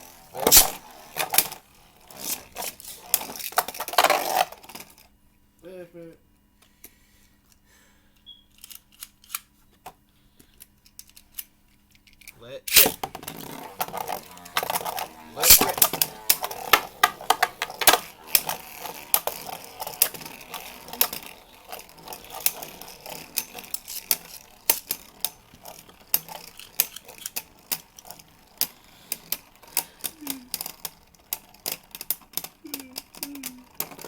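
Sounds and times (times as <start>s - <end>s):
spinning tops clacking together: 0.0s - 5.0s, 12.0s - 34.0s
spinning tops whirring: 0.0s - 5.0s, 12.7s - 34.0s.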